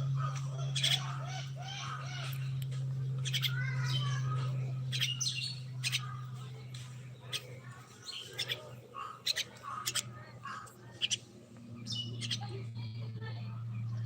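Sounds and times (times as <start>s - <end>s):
steady low hum: 0.0s - 14.0s
myna calling: 7.2s - 11.3s.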